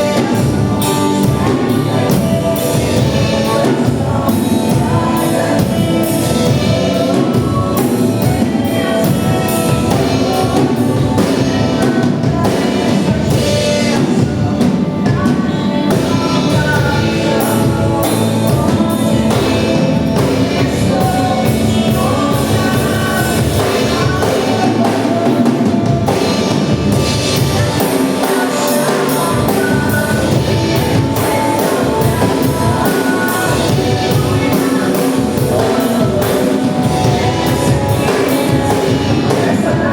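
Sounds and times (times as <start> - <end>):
band playing: 0.0 - 39.9
drum kit: 0.0 - 39.9
person singing: 0.0 - 39.9.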